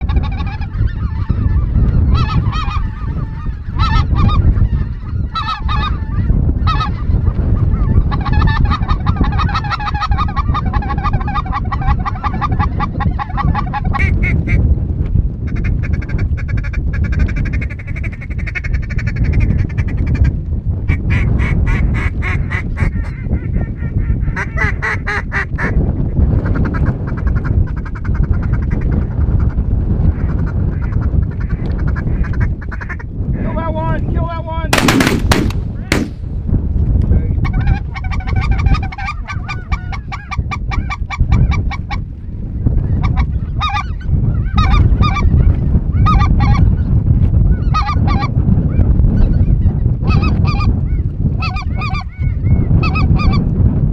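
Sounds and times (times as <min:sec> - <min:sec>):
ducks and geese calling: 0:00.0 - 0:14.6, 0:37.4 - 0:41.7, 0:42.9 - 0:45.3, 0:51.4 - 0:53.4
steady low rumble: 0:34.7 - 0:37.3.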